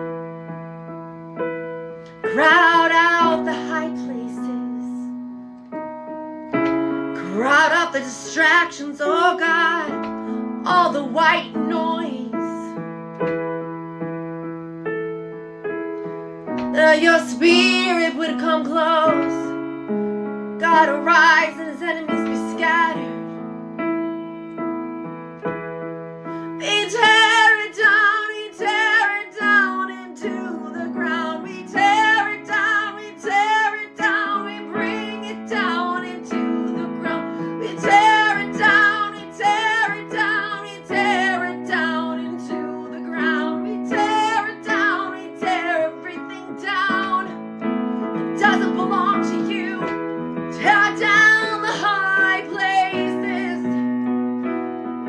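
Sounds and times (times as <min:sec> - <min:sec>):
piano chords: 0:00.0 - 0:55.0
woman singing with vibrato: 0:02.2 - 0:05.1, 0:07.2 - 0:12.8, 0:16.7 - 0:19.6, 0:20.6 - 0:23.4, 0:26.6 - 0:47.4, 0:48.2 - 0:53.8.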